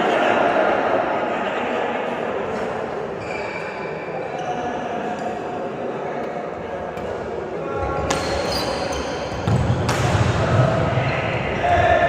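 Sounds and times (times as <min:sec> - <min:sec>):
shoe squeaks: 0:03.2 - 0:04.9, 0:08.1 - 0:09.5.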